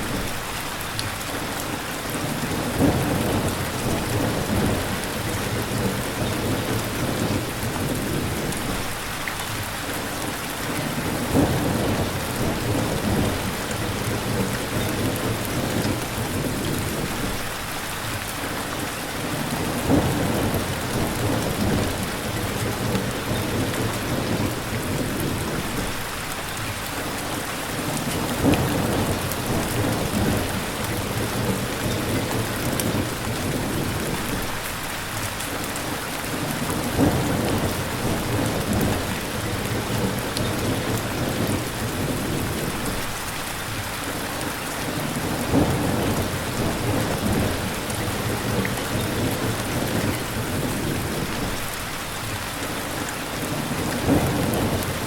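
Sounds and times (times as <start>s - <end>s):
steady rain: 0.0s - 55.0s
low rumble of thunder: 2.3s - 9.0s, 10.7s - 17.5s, 19.2s - 26.1s, 27.8s - 34.6s, 36.4s - 43.2s, 44.7s - 51.8s, 53.4s - 55.0s.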